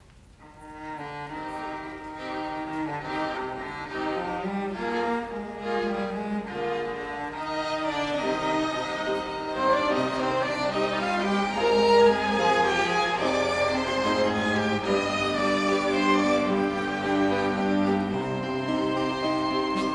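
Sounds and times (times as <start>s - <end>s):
violins playing: 0.4s - 19.9s
low strings: 4.8s - 19.9s.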